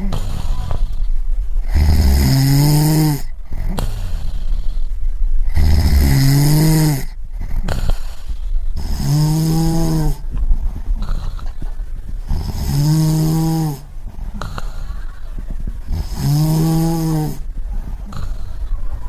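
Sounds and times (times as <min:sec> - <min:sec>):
breathy rush of air: 0:00.0 - 0:19.0
person snoring: 0:01.6 - 0:04.6, 0:05.4 - 0:08.1, 0:08.8 - 0:10.3, 0:12.3 - 0:15.1, 0:15.9 - 0:18.8.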